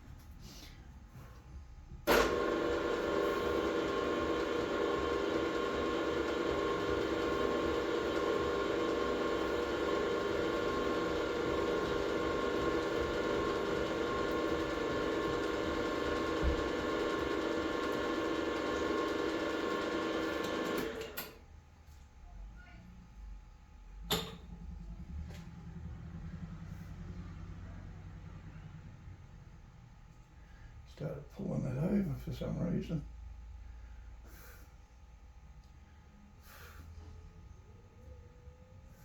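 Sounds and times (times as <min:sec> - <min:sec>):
electric machine motor running: 0:02.1 - 0:21.3.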